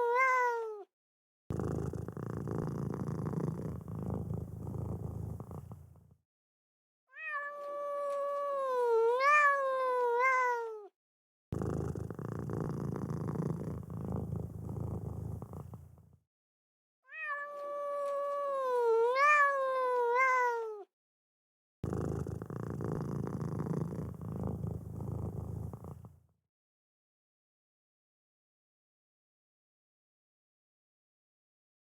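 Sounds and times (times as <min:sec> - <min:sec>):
cat meowing: 0:00.0 - 0:00.9, 0:07.1 - 0:10.9, 0:17.1 - 0:20.9
cat purring: 0:01.5 - 0:06.2, 0:11.6 - 0:16.2, 0:21.8 - 0:26.3.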